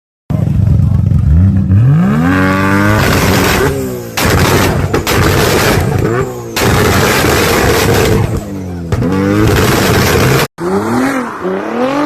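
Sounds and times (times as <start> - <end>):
car engine revving hard: 1.3 - 8.4, 9.0 - 12.0
exhaust cracks: 2.8 - 10.5.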